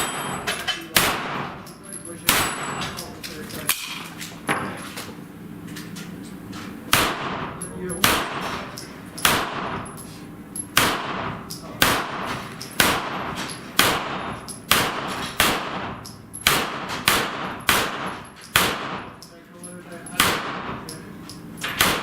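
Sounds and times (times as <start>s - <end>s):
gunshots with echo: 1.0s - 1.6s, 6.9s - 8.6s, 9.2s - 9.8s, 10.8s - 19.2s, 20.2s - 20.8s, 21.8s - 22.0s.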